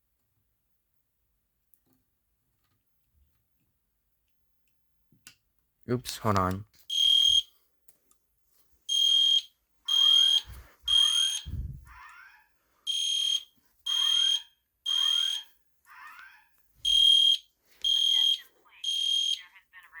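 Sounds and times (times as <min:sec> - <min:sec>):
fire alarm horn beeps: 0:06.9 - 0:07.5, 0:08.9 - 0:11.6, 0:12.9 - 0:15.5, 0:16.8 - 0:19.4.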